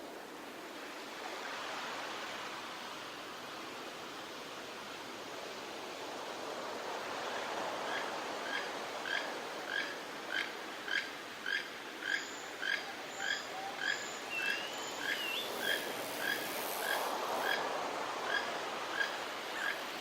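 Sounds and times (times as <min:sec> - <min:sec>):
surf washing: 0:14.9 - 0:20.0.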